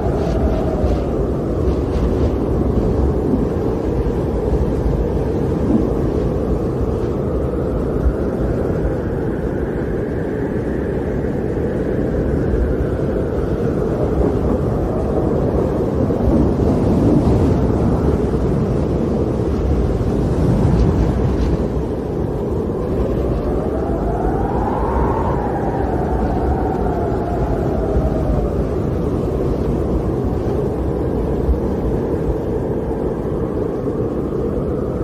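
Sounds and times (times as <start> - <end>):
storm wind blowing: 0.0 - 35.0.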